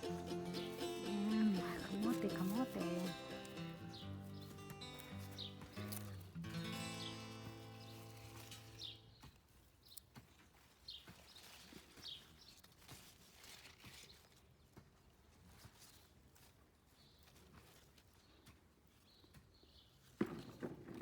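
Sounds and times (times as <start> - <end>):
rustling: 0.0 - 9.5, 10.5 - 14.5.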